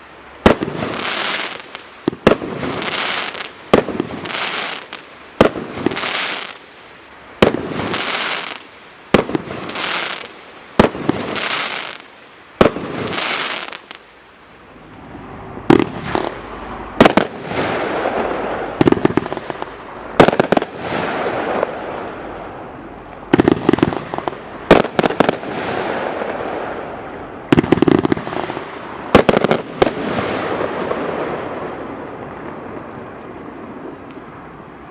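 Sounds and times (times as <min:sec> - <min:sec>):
firework shots with hiss: 0:00.0 - 0:34.4
crackling hiss: 0:00.0 - 0:34.9
sharp firework bangs: 0:00.4 - 0:06.6, 0:15.6 - 0:16.4, 0:17.0 - 0:22.1, 0:23.3 - 0:26.8.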